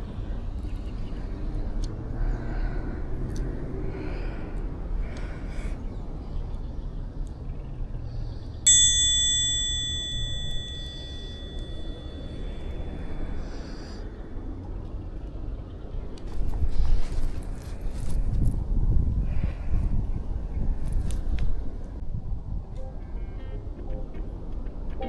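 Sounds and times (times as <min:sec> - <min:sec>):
bright bell ding: 0:08.7 - 0:12.4.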